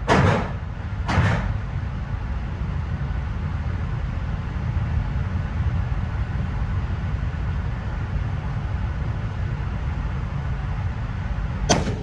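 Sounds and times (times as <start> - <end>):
rifle shot: 11.7 - 12.0.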